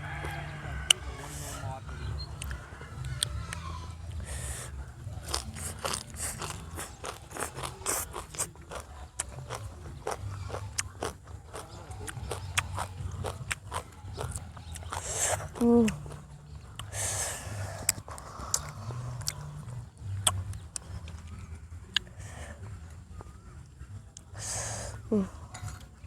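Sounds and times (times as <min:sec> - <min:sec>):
steady low hum: 0:00.0 - 0:05.2
person chewing wetly: 0:00.2 - 0:01.6, 0:02.4 - 0:22.5.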